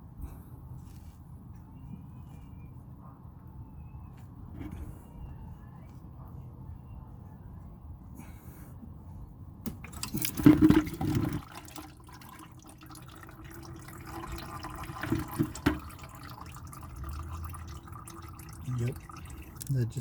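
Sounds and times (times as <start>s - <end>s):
fluid splashing and dripping: 9.7s - 19.7s.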